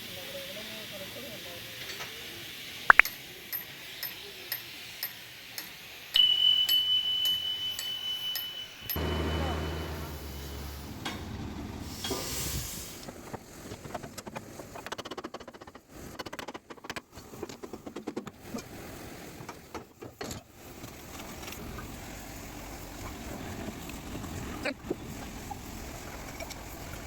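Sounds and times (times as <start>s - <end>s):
low machine hum: 8.7s - 11.9s
rapid irregular clicks and knocks: 13.2s - 18.4s.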